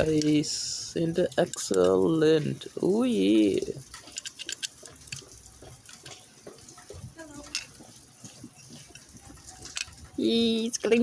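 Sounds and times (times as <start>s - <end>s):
metal lock parts clicking: 1.1s - 2.5s, 3.6s - 6.0s, 9.5s - 10.2s.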